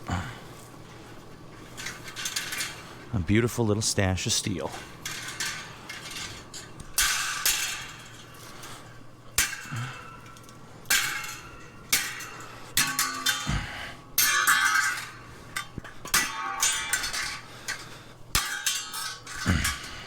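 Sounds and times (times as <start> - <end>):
scrap steel clanking: 0.9 - 3.7, 4.4 - 20.0.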